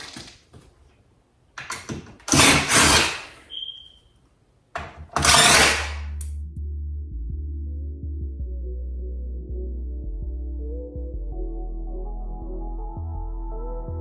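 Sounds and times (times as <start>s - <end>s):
tool clicks: 5.7s - 6.4s
background music: 6.2s - 14.0s.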